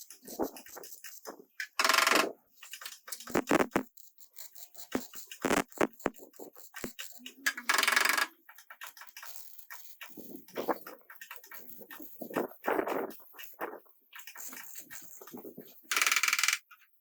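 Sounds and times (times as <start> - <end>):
tools clicking and knocking on metal: 0.0 - 13.6.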